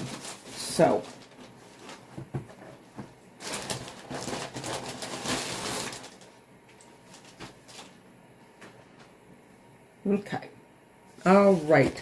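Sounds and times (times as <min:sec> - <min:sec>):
packaging rustling and crinkling: 0:00.0 - 0:08.0.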